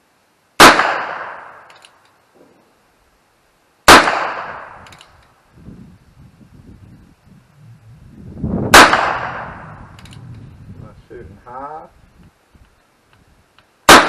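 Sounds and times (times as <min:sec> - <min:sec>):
gunshots with ringing echo: 0:00.6 - 0:01.7, 0:03.9 - 0:04.8, 0:08.7 - 0:09.8.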